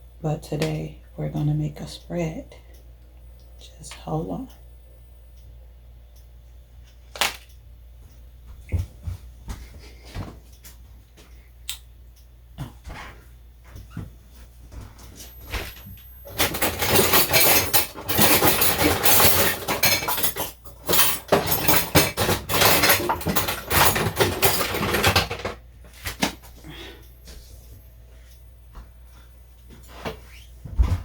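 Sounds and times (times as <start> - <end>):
dishes and utensils clattering: 16.3 - 25.6.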